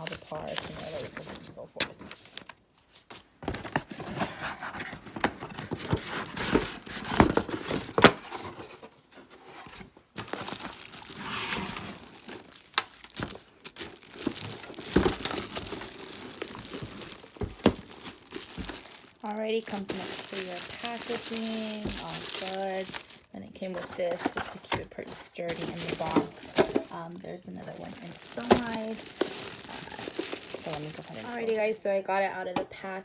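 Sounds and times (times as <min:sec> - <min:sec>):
packaging crinkling and tearing: 0:03.6 - 0:08.8, 0:10.2 - 0:31.8.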